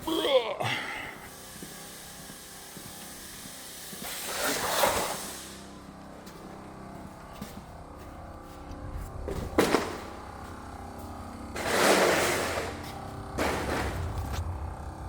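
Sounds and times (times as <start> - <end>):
air hissing from leak: 1.0 - 5.8.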